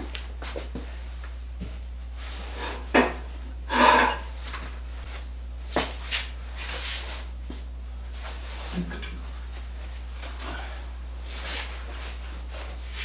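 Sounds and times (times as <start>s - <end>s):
steady low hum: 0.0s - 13.0s
metal scrape: 3.7s - 4.3s.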